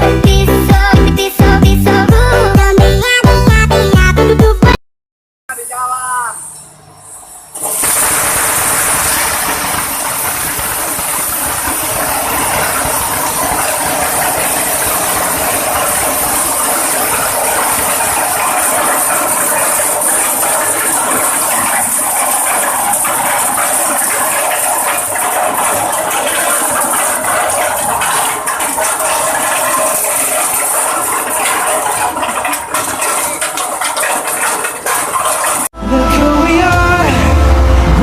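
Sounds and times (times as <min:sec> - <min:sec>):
processing machine rattling hiss: 0:05.6 - 0:35.7.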